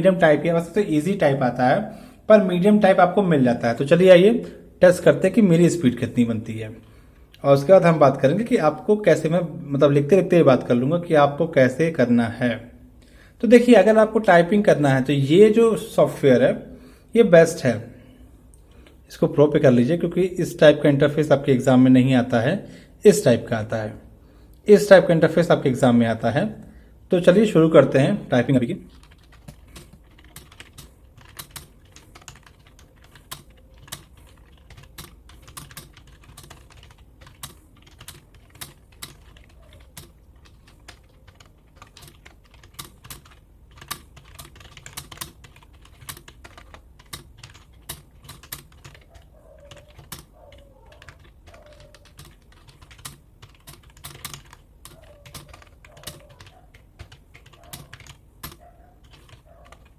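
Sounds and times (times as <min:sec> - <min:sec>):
computer keyboard typing: 0:28.6 - 0:59.9.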